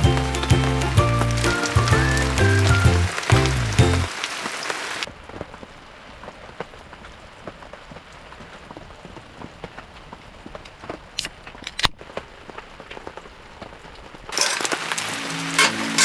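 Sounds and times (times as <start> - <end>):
background music: 0.0 - 4.1
rain drops ticking: 0.0 - 5.1, 14.3 - 16.0.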